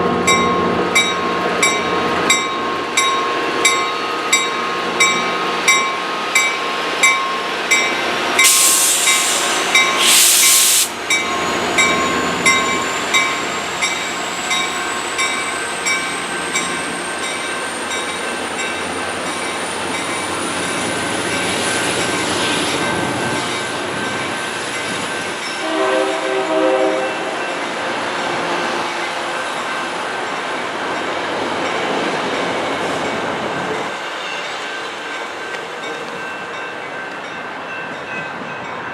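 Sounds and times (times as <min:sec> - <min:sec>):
train rolling past: 0:00.0 - 0:38.9
high wheel squeal: 0:08.4 - 0:23.5
short hisses: 0:08.5 - 0:11.0
train horn: 0:25.6 - 0:29.5.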